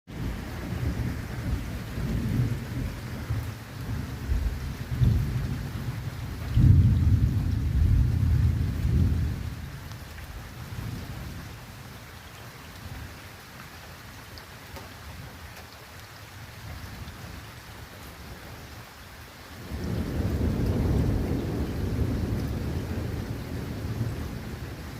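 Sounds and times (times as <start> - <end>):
thunder rumbling: 0.1 - 9.9, 19.6 - 24.9
steady rain hissing: 0.1 - 24.9.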